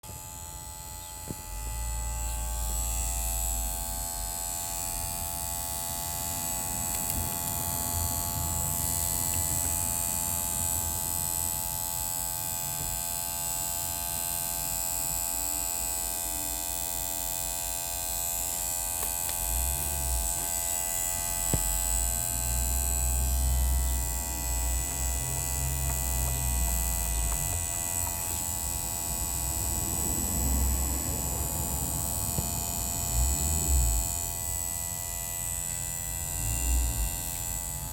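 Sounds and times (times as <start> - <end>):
car buzzing hum: 1.0 - 11.6, 19.0 - 34.7, 36.1 - 37.9.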